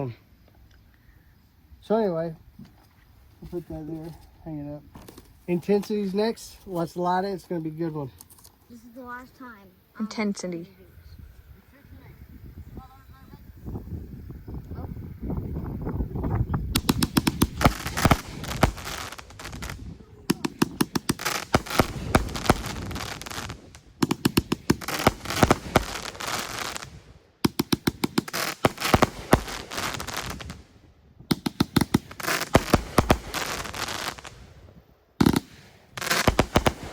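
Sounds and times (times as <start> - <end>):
firework cake crackling: 11.4 - 36.9.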